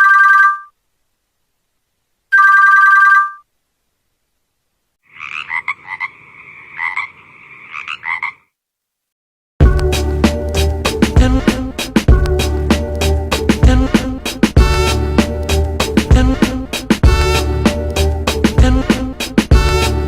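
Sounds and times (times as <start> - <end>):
two-tone phone beep: 0.0 - 0.7, 2.4 - 3.4
warbling phone ring: 0.0 - 0.7, 2.3 - 3.4.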